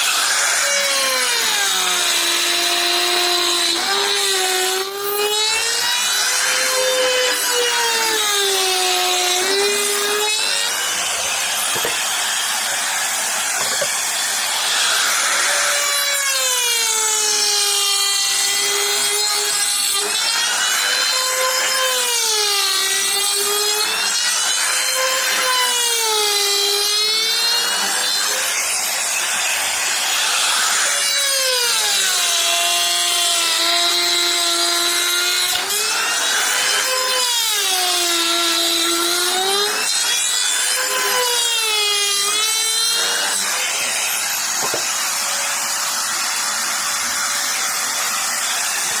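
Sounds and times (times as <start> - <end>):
power tool cutting wood: 0.0 - 49.0.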